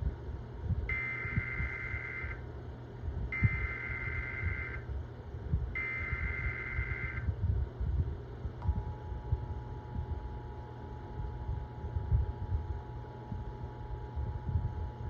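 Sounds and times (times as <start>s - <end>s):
low hum: 0.0s - 15.0s
buzzy digital data tones: 0.9s - 2.4s, 3.4s - 4.8s, 5.8s - 7.3s.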